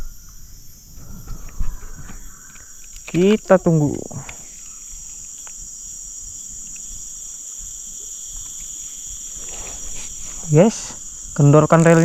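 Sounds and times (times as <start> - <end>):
high-pitched insect chorus: 0.0 - 12.0.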